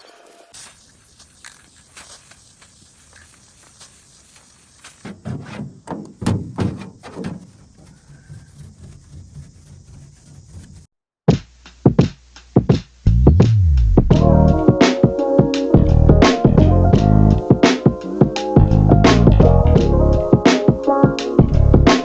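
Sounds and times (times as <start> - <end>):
hollow thumps of boat hull: 5.0 - 10.8.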